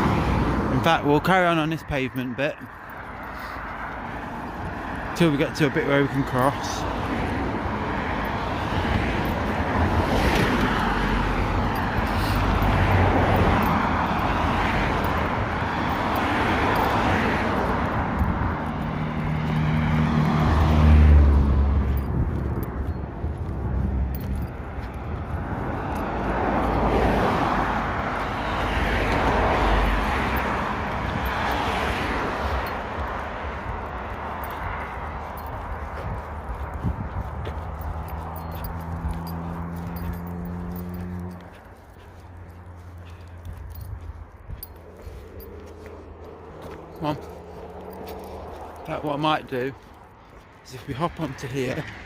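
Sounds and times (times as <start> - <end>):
road traffic passing: 0.0 - 52.0
wind rumbling on microphone: 6.8 - 40.0.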